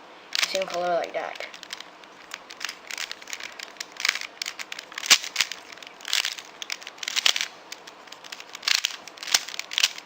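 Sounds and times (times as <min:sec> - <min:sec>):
puzzle cube clicking: 0:00.4 - 0:10.0.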